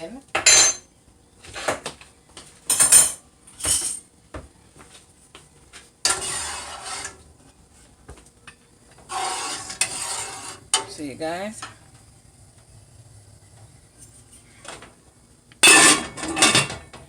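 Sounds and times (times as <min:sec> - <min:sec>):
utensils and pots clinking: 0:00.4 - 0:00.9, 0:02.7 - 0:04.1, 0:06.0 - 0:07.2, 0:15.6 - 0:17.0
rustling scrape: 0:06.1 - 0:07.2, 0:09.0 - 0:10.7.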